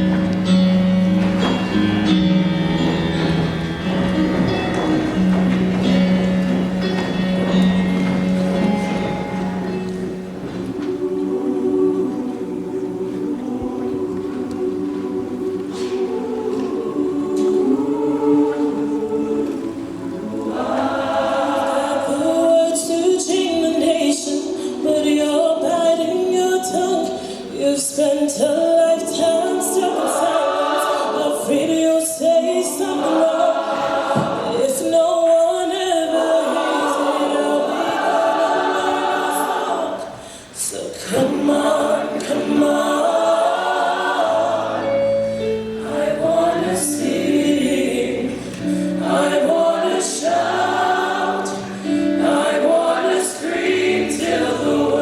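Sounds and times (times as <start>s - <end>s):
instrumental accompaniment: 0.0s - 22.9s
choir singing in harmony: 0.0s - 55.0s.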